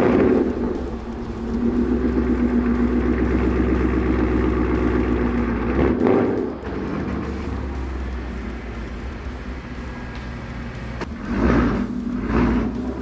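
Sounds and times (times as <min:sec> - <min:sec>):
car engine running: 0:00.0 - 0:13.0.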